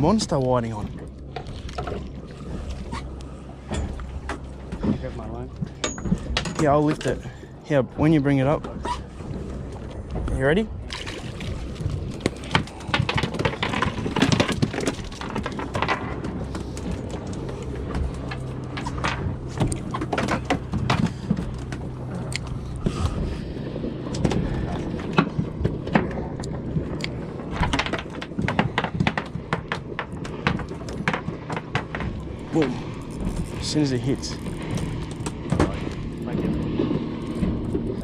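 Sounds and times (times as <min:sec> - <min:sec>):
low steady hum: 0:00.0 - 0:38.0
fishing gear knocks and clicks: 0:10.9 - 0:23.3, 0:24.0 - 0:38.0.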